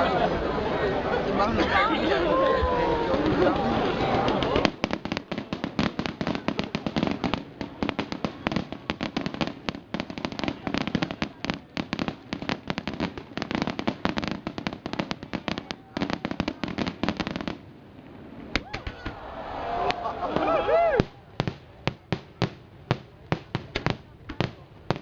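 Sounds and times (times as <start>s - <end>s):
fireworks crackling: 1.7s - 19.2s, 19.8s - 25.0s.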